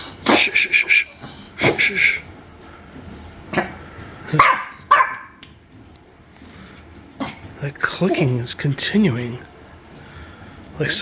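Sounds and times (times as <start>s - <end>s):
dogs barking and yipping: 4.3s - 5.4s.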